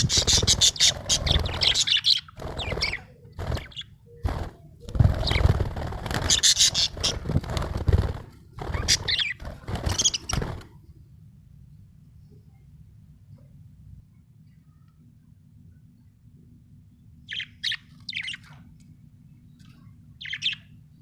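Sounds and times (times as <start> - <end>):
budgerigar chirping and chattering: 0.0 - 3.9, 6.3 - 7.2, 8.8 - 10.3, 20.2 - 20.7.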